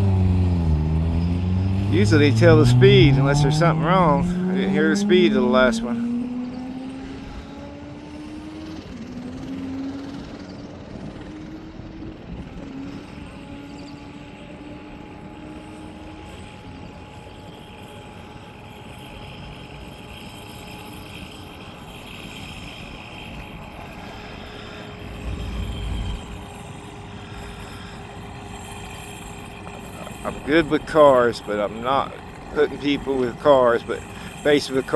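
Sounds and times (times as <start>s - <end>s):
race car engine accelerating: 0.0s - 10.6s, 24.0s - 34.9s
low rumble: 25.0s - 26.7s.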